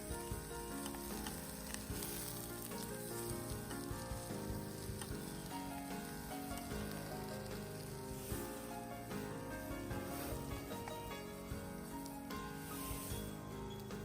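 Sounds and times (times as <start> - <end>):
background music melody: 0.0 - 14.0
steady hiss with crackles: 0.0 - 14.0.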